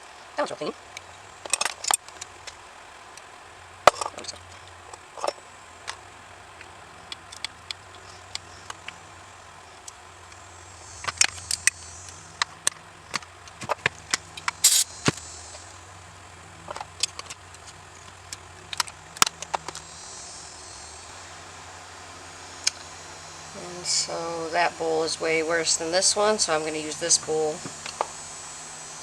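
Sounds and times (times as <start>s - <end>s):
small metal parts clicking: 14.6s - 14.8s
short hiss: 14.6s - 15.4s.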